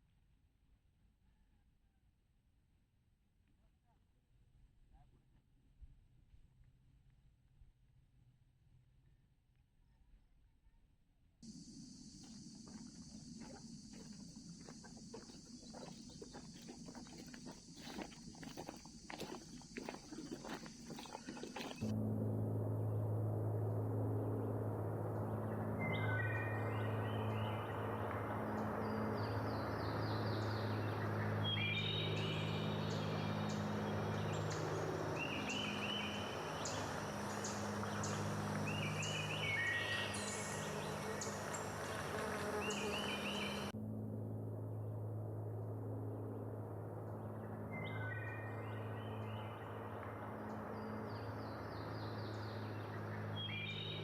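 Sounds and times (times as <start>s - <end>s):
low hum: 11.4s - 54.0s
birds chirping trills: 11.5s - 21.9s, 25.2s - 43.7s, 47.1s - 54.0s.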